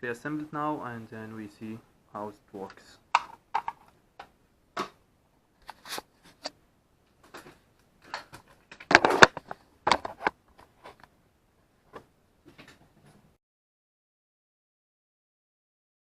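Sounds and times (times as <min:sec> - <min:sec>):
plastic parts clicking and knocking: 0:02.7 - 0:05.0, 0:07.2 - 0:11.1.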